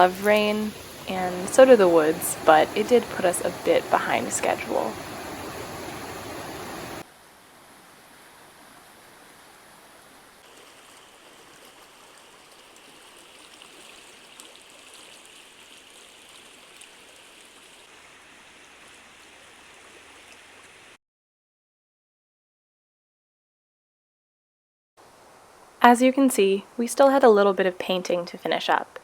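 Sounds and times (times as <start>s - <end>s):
steady hiss: 0.0s - 7.0s
stream water flowing: 0.0s - 21.0s.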